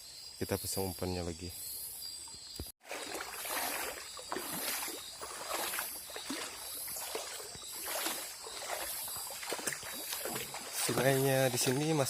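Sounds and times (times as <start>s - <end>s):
insect buzzing: 1.6s - 11.5s
water sloshing and splashing: 2.8s - 12.0s.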